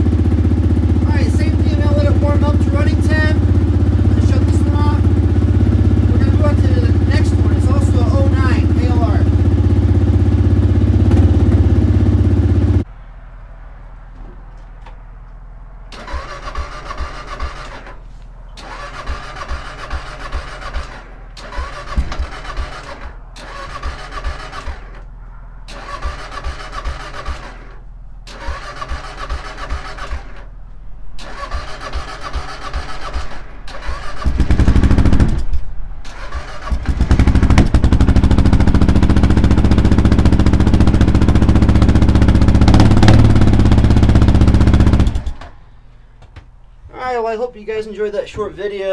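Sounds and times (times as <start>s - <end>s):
electric starter cranking: 0.0s - 12.8s, 15.9s - 30.6s, 31.2s - 45.7s
motorcycle engine running loudly: 0.0s - 12.9s, 18.7s - 25.0s, 25.8s - 27.6s, 28.3s - 30.2s, 31.3s - 35.4s, 36.2s - 45.4s.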